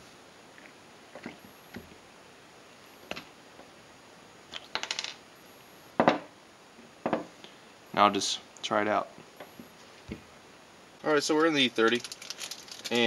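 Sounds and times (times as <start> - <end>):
small metal pieces clinking: 11.8 - 13.0.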